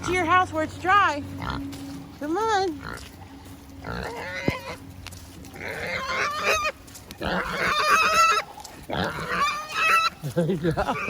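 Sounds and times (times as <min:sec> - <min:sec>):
farm animal crying out: 0:02.7 - 0:04.9, 0:05.5 - 0:11.0.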